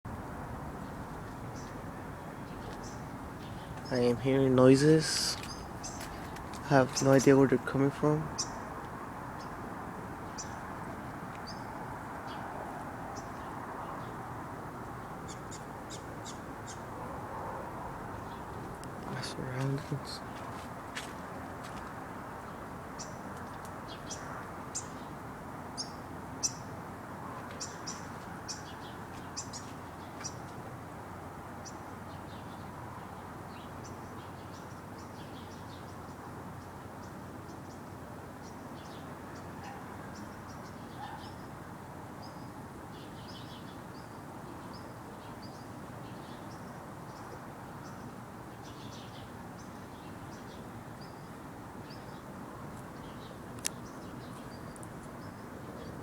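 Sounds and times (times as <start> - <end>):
background hiss and rumble: 0.1 - 39.3
small birds chirping: 0.8 - 17.1, 17.8 - 30.6, 31.6 - 41.6, 42.2 - 56.0.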